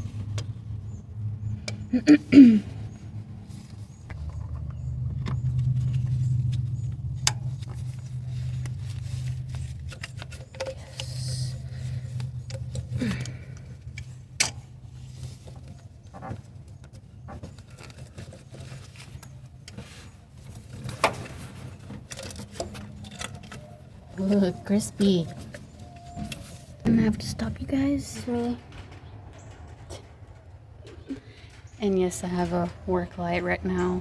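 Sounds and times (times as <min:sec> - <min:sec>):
low hum: 0:00.0 - 0:18.1, 0:22.0 - 0:34.0
tools clicking and rattling: 0:04.1 - 0:15.8.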